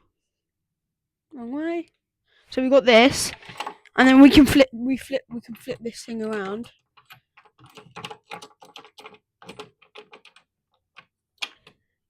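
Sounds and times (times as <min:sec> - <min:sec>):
objects clicking and knocking: 0:03.3 - 0:04.0, 0:06.2 - 0:11.8.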